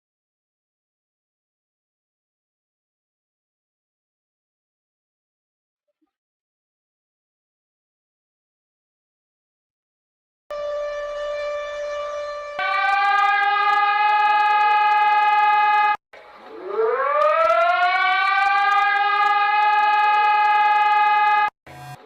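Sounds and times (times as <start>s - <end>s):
siren steady tone: 10.5s - 22.0s
siren winding up: 12.6s - 22.0s.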